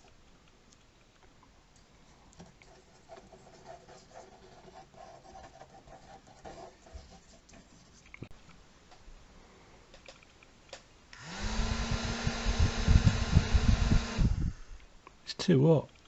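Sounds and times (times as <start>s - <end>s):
pencil sketching on paper: 2.6s - 8.0s.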